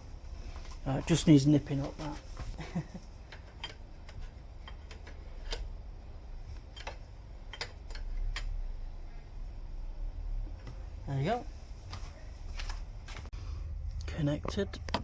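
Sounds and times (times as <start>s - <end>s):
low rumble: 13.3s - 15.0s.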